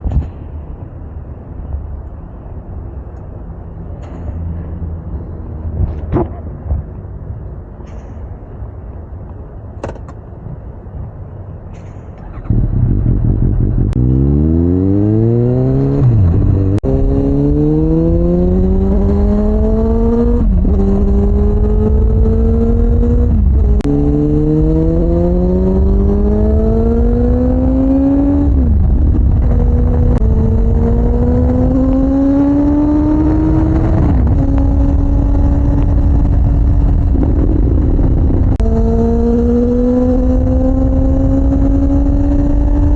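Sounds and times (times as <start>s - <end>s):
motorcycle engine accelerating: 12.3s - 42.9s.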